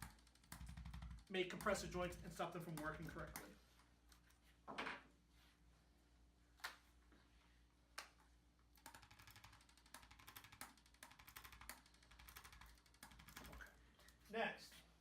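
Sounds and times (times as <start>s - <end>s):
adjusting instrument clicking rapidly: 0.0s - 3.6s, 8.7s - 13.8s.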